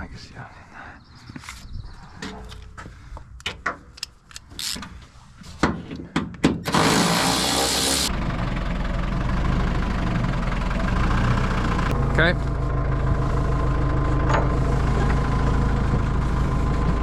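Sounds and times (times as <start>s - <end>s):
engine starting and idling: 6.7s - 12.3s.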